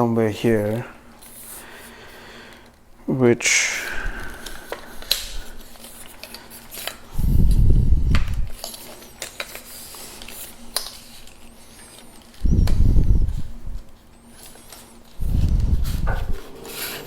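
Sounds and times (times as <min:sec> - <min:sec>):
deep handling rumble: 0:15.2 - 0:17.0.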